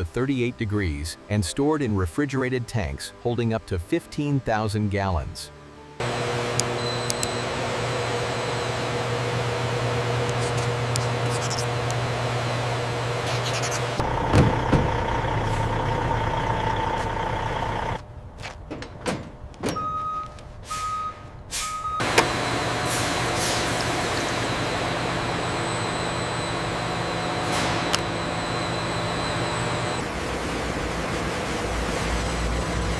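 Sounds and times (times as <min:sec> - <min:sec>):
heavy truck running: 0:06.0 - 0:32.9
reversing alarm beeps: 0:06.8 - 0:09.0, 0:19.7 - 0:22.8, 0:24.4 - 0:30.0.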